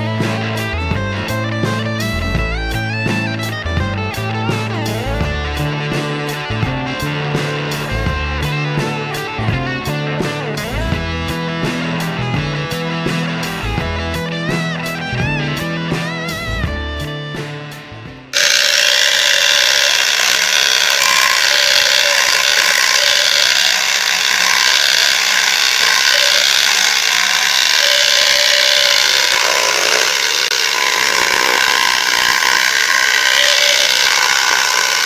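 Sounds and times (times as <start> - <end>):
guitar music: 0.0 - 19.0
electric jigsaw cutting wood: 18.3 - 35.0.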